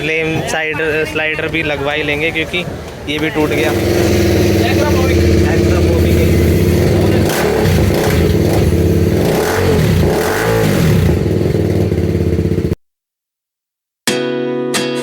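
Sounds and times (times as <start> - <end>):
motorcycle engine revving: 3.2 - 12.8
strummed acoustic guitar music: 14.1 - 15.0.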